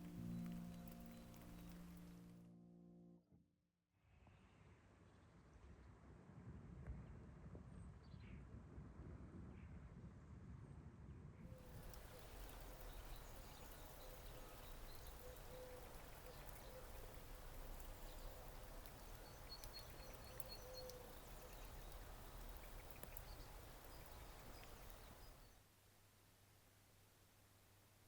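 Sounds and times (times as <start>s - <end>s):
distant birds calling: 11.6s - 25.5s.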